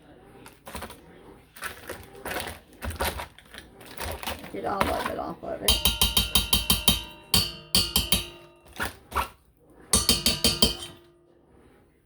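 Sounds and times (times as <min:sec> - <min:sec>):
utensil rapping on mixing bowl: 0:04.0 - 0:09.0, 0:10.0 - 0:11.1.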